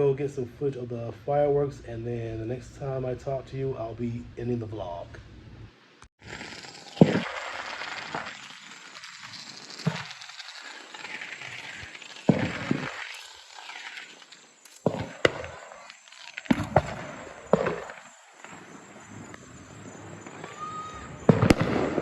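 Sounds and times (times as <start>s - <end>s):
fireworks crackling: 0.0s - 22.0s
fireworks bangs: 6.2s - 22.0s.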